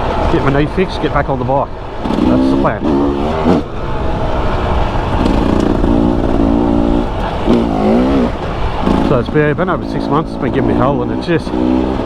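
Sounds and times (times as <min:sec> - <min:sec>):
dirt bike engine running: 0:00.0 - 0:12.0.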